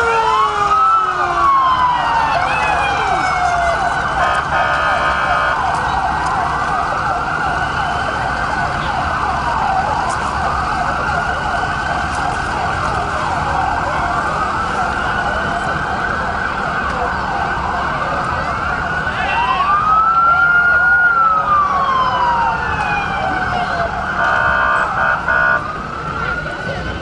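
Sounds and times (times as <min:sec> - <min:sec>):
emergency sirens wailing: 0:00.0 - 0:27.0
horn: 0:04.2 - 0:05.6.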